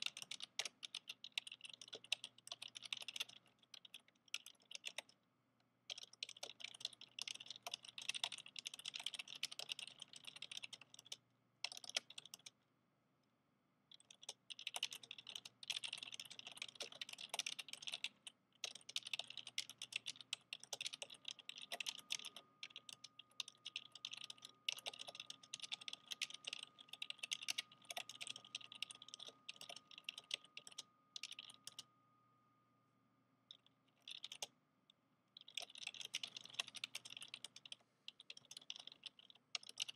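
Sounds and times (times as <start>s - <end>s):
clicky keyboard typing: 0.0s - 12.6s, 13.9s - 31.9s, 33.5s - 34.6s, 35.4s - 39.9s
faint steady high tone: 20.8s - 38.0s.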